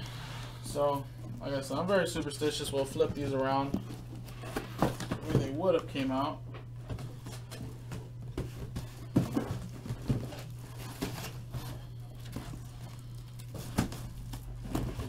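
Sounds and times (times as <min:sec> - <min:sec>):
steady low hum: 0:00.0 - 0:15.0
cardboard boxes handled on table: 0:06.9 - 0:15.0.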